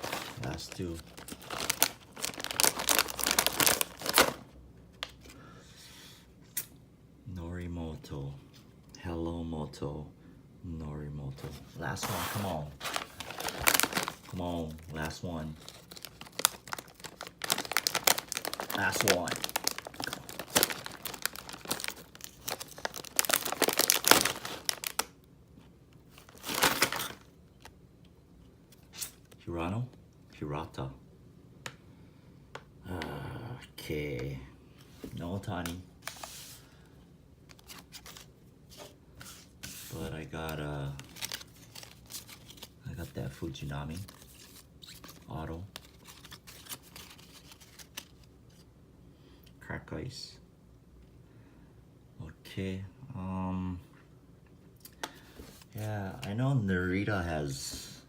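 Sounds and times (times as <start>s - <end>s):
card packet tearing and crinkling: 0.0s - 4.5s, 11.9s - 25.1s, 26.1s - 27.3s, 37.5s - 48.3s.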